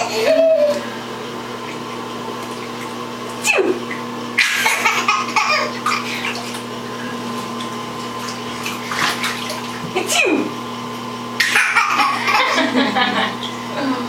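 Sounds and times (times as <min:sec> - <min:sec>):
baby laughing: 0:00.0 - 0:00.9, 0:04.4 - 0:06.4, 0:11.4 - 0:12.8
adult fake sneeze: 0:03.4 - 0:03.8, 0:10.0 - 0:10.5.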